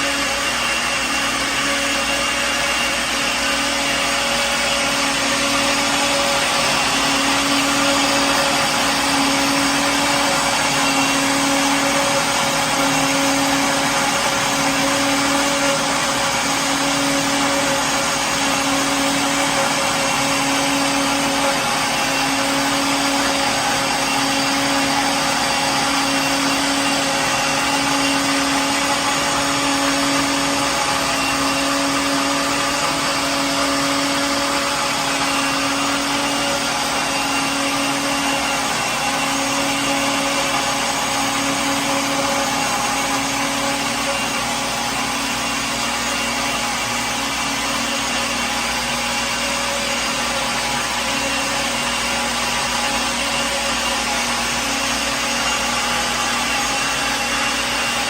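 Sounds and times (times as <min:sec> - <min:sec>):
blender motor whirring: 0:00.0 - 0:58.0.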